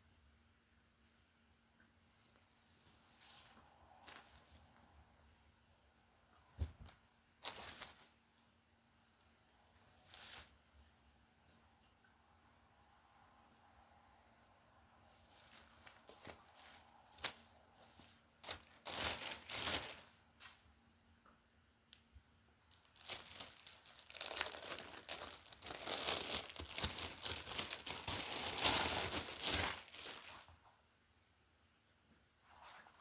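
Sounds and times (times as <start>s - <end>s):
packaging being torn and crinkled: 18.4s - 20.1s, 22.7s - 30.5s.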